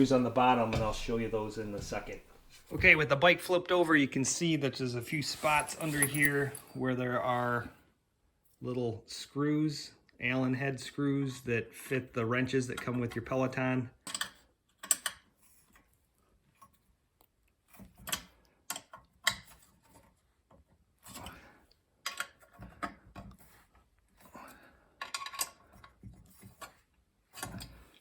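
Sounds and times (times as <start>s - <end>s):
parts clicking and knocking: 14.0s - 15.3s, 22.0s - 23.4s, 25.0s - 26.8s.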